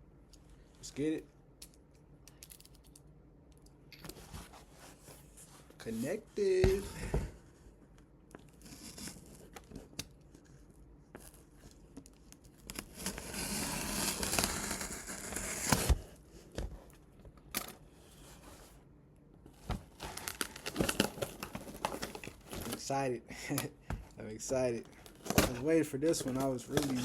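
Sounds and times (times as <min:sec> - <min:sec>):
tape tearing: 0:12.6 - 0:16.0, 0:19.9 - 0:22.9
box cutter slitting tape: 0:12.7 - 0:16.1
cardboard crinkling: 0:19.6 - 0:23.0, 0:24.6 - 0:27.0.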